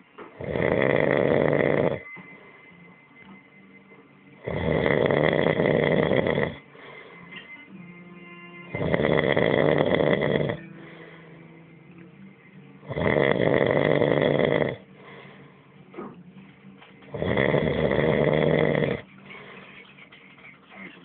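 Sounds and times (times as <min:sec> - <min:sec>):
very loud snoring: 0:00.4 - 0:02.1, 0:04.4 - 0:06.6, 0:08.7 - 0:10.6, 0:12.9 - 0:14.8, 0:17.2 - 0:19.0.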